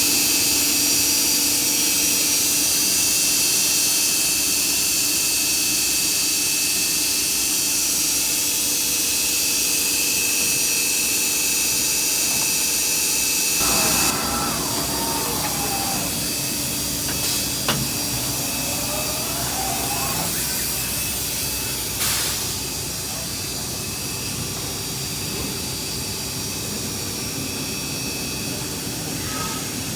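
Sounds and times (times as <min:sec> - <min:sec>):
shifting tone: 0:13.6 - 0:21.3
constant tones: 0:13.6 - 0:21.4
router machine whining: 0:13.6 - 0:22.0.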